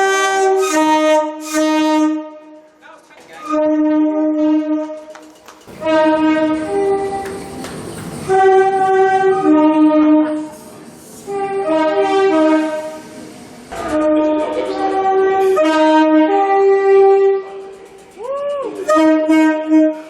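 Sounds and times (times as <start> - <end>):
train horn: 0.0 - 2.8, 3.4 - 7.6, 8.2 - 18.0, 18.8 - 20.0
train rumble: 0.0 - 20.0.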